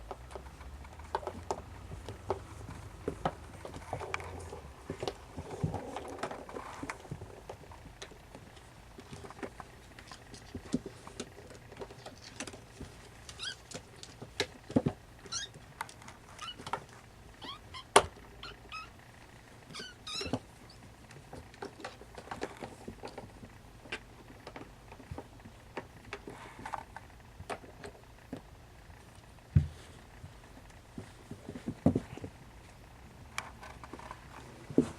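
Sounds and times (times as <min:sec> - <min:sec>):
kittens tapping and knocking: 0:00.0 - 0:18.8, 0:19.6 - 0:28.4
kittens squeaking: 0:13.3 - 0:13.8, 0:15.2 - 0:15.6, 0:16.3 - 0:16.7, 0:17.4 - 0:20.9.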